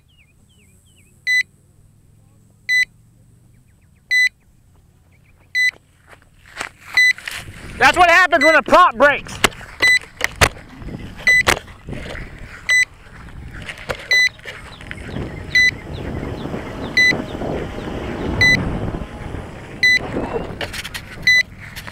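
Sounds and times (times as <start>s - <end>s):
rustling and handling noise: 6.0s - 7.8s.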